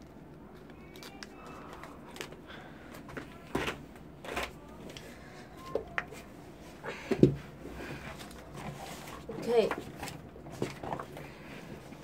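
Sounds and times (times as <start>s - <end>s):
paper rustling and crinkling: 7.9s - 12.0s.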